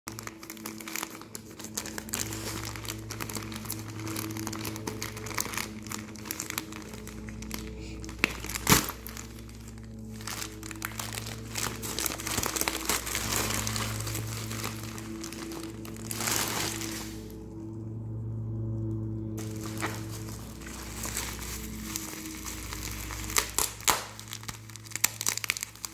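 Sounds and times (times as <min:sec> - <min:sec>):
packaging crinkling: 0:00.1 - 0:17.5, 0:19.4 - 0:25.9
background music: 0:00.1 - 0:25.9.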